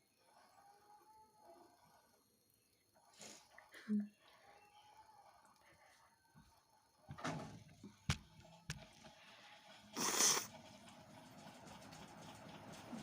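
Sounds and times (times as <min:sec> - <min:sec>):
person blowing breath through nose: 0:09.9 - 0:10.5.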